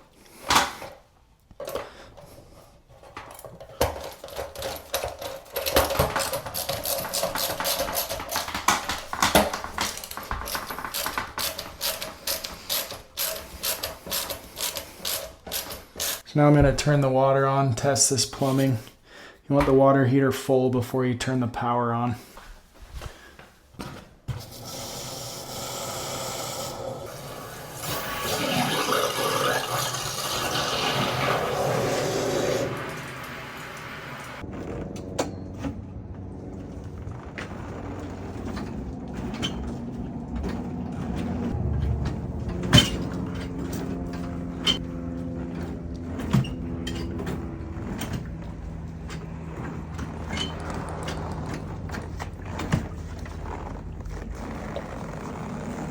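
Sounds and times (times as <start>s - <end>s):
water rushing through pipes: 24.4s - 34.4s.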